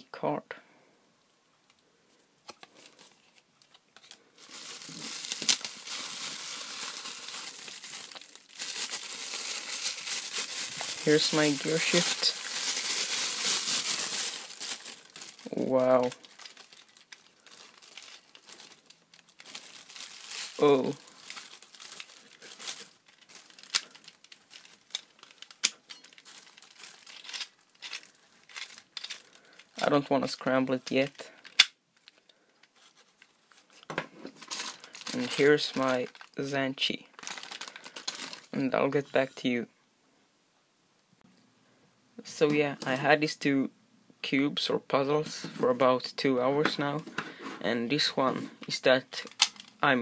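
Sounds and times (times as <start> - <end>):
packaging crinkling and rustling: 2.5 - 30.0, 30.9 - 38.6, 48.6 - 50.0.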